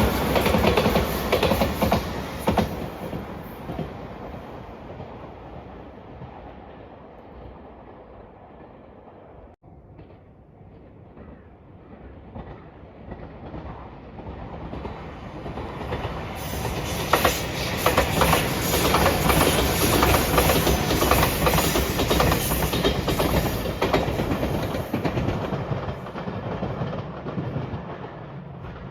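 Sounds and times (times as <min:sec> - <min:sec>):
electric train passing: 0:00.0 - 0:11.2, 0:12.3 - 0:28.9
wheels clattering over rail joints: 0:15.5 - 0:28.1.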